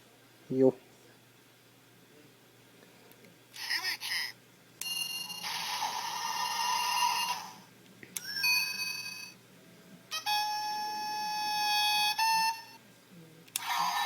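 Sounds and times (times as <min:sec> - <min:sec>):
long steady ringing tone: 0:04.8 - 0:09.4, 0:10.1 - 0:12.8.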